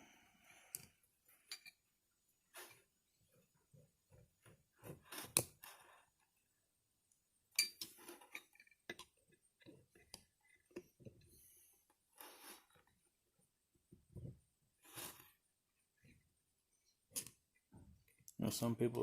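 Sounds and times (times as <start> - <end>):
small metal parts clicking and scraping: 7.5 - 10.7.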